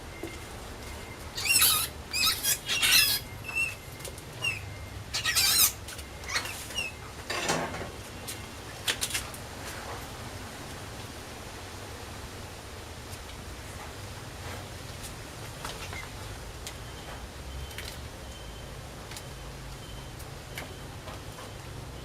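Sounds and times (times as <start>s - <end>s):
mouse squeaking: 1.4s - 3.8s, 4.4s - 7.0s.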